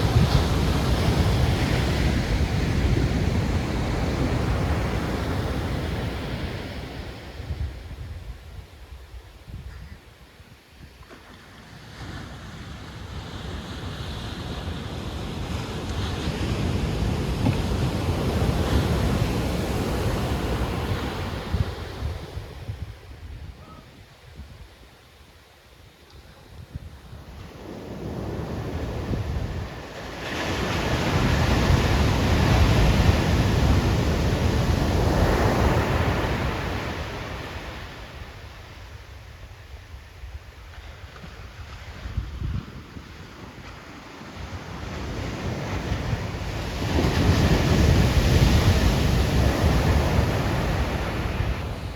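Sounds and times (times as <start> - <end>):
ocean surf breaking: 0.0 - 7.5, 27.4 - 38.2, 43.6 - 51.9
wind rumbling on microphone: 0.0 - 24.9, 26.2 - 51.9
surf waves breaking: 43.1 - 51.9.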